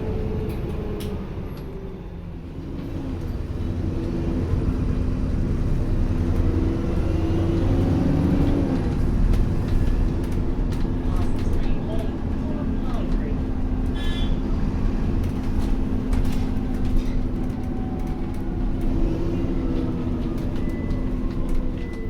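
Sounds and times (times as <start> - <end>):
bus diesel engine rumbling: 0.0 - 22.0.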